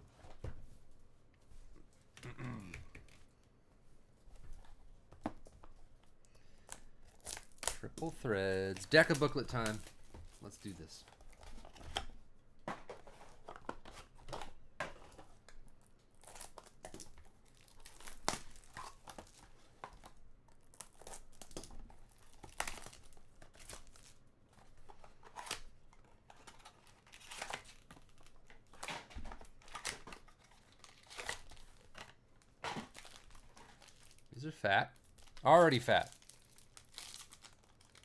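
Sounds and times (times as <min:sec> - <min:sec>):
cards crackling as handled: 0:06.6 - 0:12.0, 0:35.0 - 0:38.0
wrapper tearing and crinkling: 0:07.0 - 0:10.8, 0:16.2 - 0:24.2, 0:26.3 - 0:34.4, 0:35.0 - 0:38.0.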